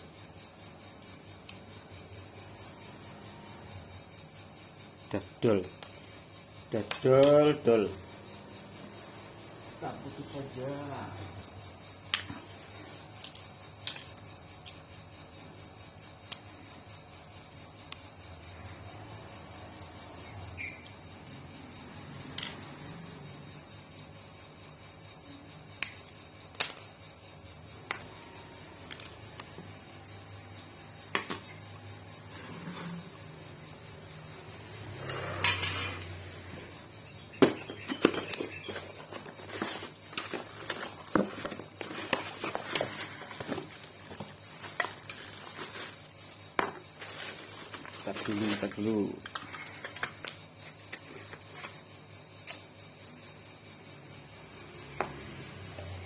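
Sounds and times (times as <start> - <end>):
metallic clinks of hand tools: 34.8 - 36.3.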